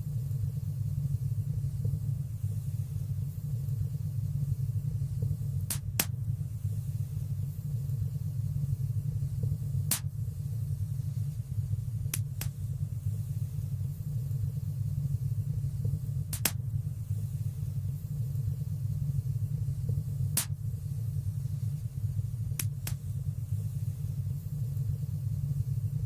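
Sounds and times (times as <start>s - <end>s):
fire crackling in a fireplace: 0.0s - 26.0s
sharp pops of fire: 5.6s - 6.3s, 9.8s - 10.4s, 12.0s - 12.8s, 16.2s - 16.9s, 20.3s - 20.9s, 22.5s - 23.3s.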